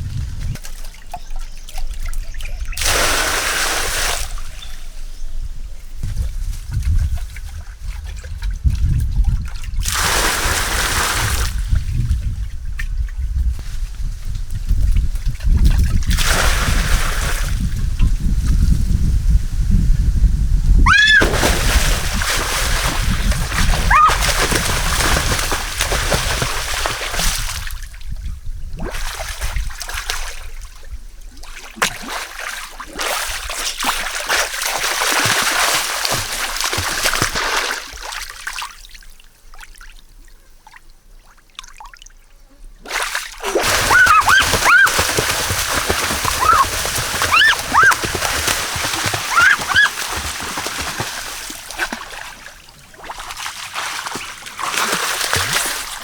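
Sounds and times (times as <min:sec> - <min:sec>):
water splashing in pool: 0:00.4 - 0:04.7, 0:07.2 - 0:11.8, 0:15.6 - 0:17.7, 0:20.9 - 0:28.0, 0:31.4 - 0:39.0, 0:42.8 - 0:56.0.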